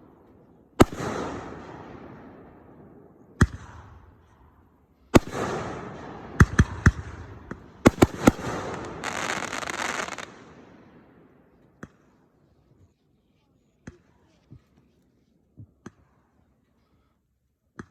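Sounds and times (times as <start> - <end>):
fireworks bangs: 0.8 - 4.0, 5.2 - 12.0
fireworks crackling: 5.2 - 10.8.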